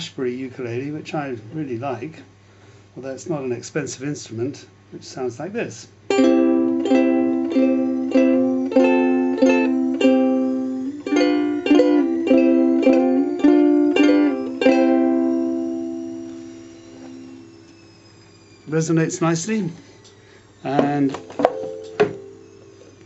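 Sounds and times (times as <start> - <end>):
ukulele strumming chords: 6.1 - 16.7, 20.8 - 22.4.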